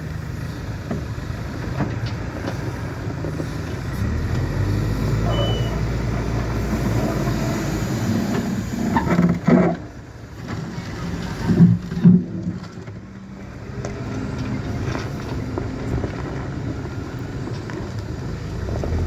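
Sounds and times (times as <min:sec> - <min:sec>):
heavy truck engine running: 0:00.0 - 0:19.0
high beep: 0:05.2 - 0:05.8.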